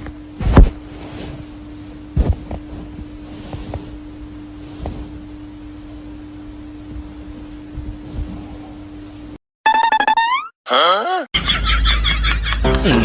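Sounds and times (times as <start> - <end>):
steady low hum: 0.0 - 9.4.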